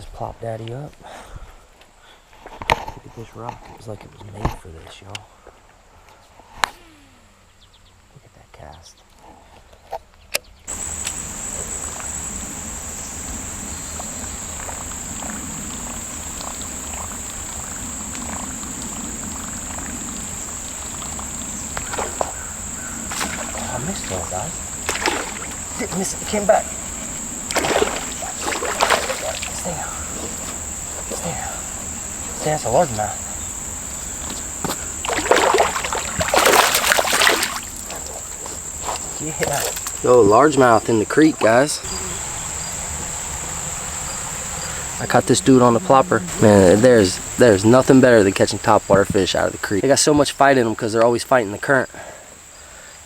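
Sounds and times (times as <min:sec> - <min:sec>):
fish thrashing and splashing in water: 0:10.7 - 0:32.8, 0:34.1 - 0:40.1
crickets chirping: 0:10.7 - 0:53.0
high-pitched insect chorus: 0:10.7 - 0:53.0.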